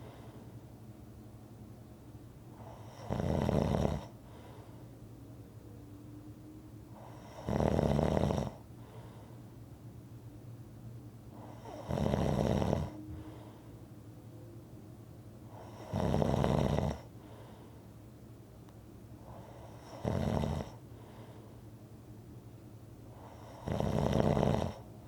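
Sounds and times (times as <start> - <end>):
person snoring: 11.5 - 13.0, 15.6 - 17.1, 19.7 - 20.8, 23.2 - 24.8.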